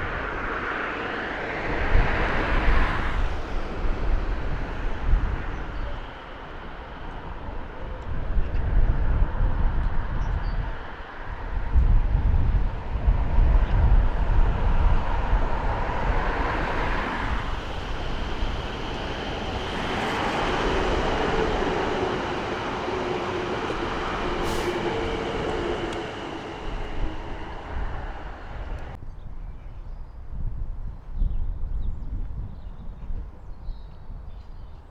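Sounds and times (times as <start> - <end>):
train passing rumble: 0.0 - 29.0.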